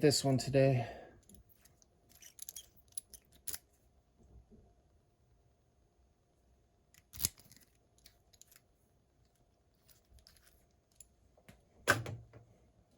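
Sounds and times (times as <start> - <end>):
padlocks and keys clacking: 1.3 - 3.7, 7.0 - 8.6.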